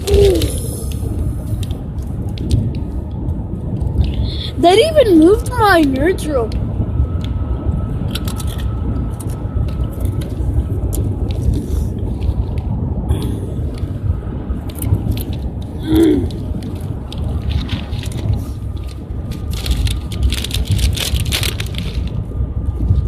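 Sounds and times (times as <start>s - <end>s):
crunching and crackling clicks: 0.0s - 4.2s, 8.0s - 12.7s, 14.6s - 22.2s.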